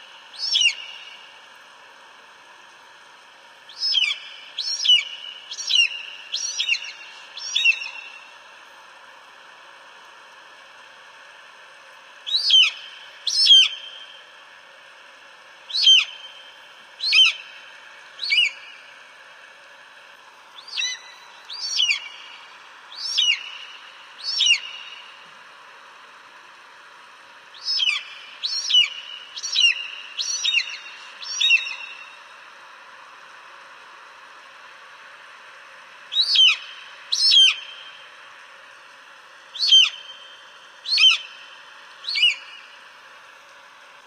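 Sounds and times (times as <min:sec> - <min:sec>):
steady background hiss: 0:00.0 - 0:44.0
eagle calling: 0:00.4 - 0:01.1, 0:03.8 - 0:08.2, 0:12.3 - 0:14.0, 0:15.7 - 0:16.3, 0:17.0 - 0:17.5, 0:18.2 - 0:18.8, 0:20.6 - 0:25.1, 0:27.6 - 0:32.1, 0:36.1 - 0:37.8, 0:39.6 - 0:40.2, 0:40.8 - 0:41.4, 0:42.0 - 0:42.6.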